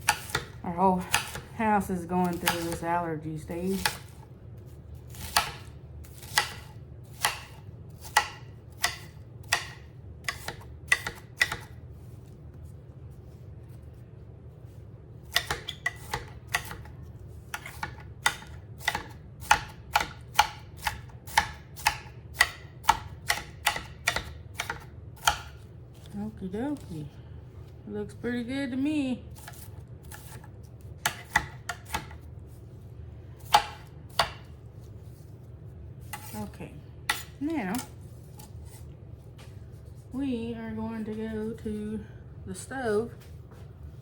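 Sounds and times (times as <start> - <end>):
knife chopping on cutting board: 0.0 - 1.5, 2.2 - 2.8, 3.7 - 4.2, 5.1 - 11.8, 15.2 - 26.1, 29.4 - 32.3, 33.4 - 35.3, 36.0 - 36.4, 37.1 - 38.8.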